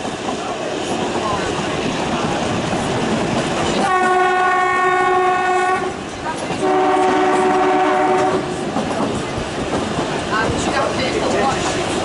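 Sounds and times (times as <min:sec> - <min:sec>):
rumble and clatter of moving train: 0:00.0 - 0:12.0
train horn blasts: 0:03.8 - 0:06.0, 0:06.6 - 0:08.6.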